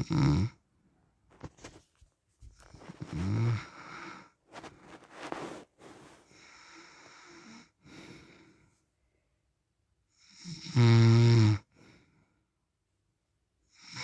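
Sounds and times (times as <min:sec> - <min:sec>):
man snoring: 0:00.0 - 0:00.5, 0:10.4 - 0:11.6.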